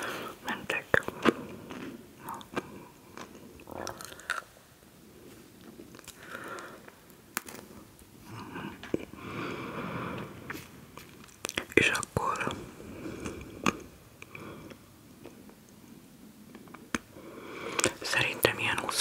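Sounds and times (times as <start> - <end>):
chewing crunchy snacks: 1.0 - 4.6, 5.6 - 8.1, 10.5 - 12.6.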